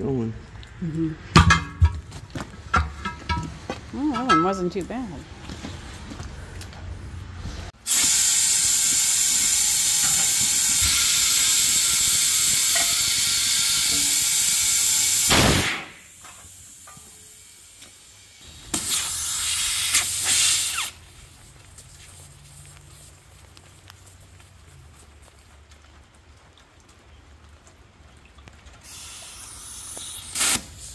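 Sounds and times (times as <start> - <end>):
compressed air hissing into tire: 7.8 - 21.0, 28.9 - 30.9.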